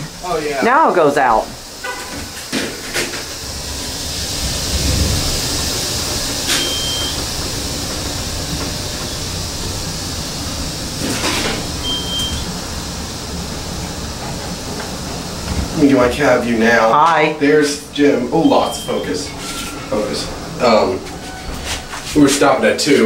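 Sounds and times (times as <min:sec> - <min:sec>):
elevator cab humming: 0:00.0 - 0:23.0
air rushing: 0:01.5 - 0:17.0
short high beeps: 0:06.5 - 0:07.2, 0:18.4 - 0:19.2.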